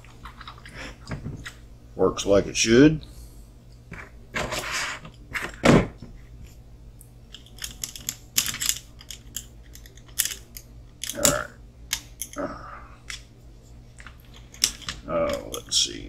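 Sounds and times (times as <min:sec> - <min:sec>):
small parts clicking and tapping: 0:07.3 - 0:12.4, 0:13.0 - 0:13.3, 0:14.0 - 0:15.8.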